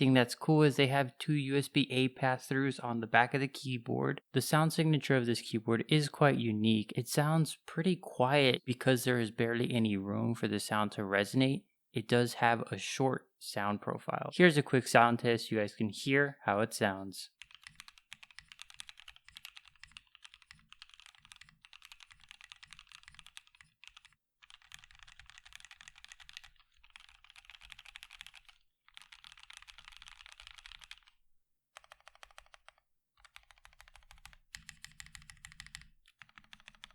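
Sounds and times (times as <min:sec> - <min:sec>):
mechanical keyboard typing: 0:17.4 - 0:31.2, 0:31.8 - 0:36.9.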